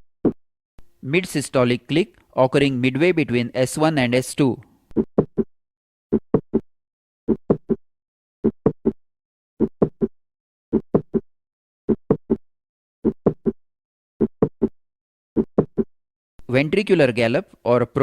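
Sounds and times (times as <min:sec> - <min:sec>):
heartbeat with click: 0:04.9 - 0:05.5, 0:06.1 - 0:06.6, 0:07.3 - 0:07.8, 0:08.4 - 0:09.0, 0:09.6 - 0:10.1, 0:10.7 - 0:11.3, 0:11.9 - 0:12.4, 0:13.0 - 0:13.6, 0:14.2 - 0:14.8, 0:15.4 - 0:15.9.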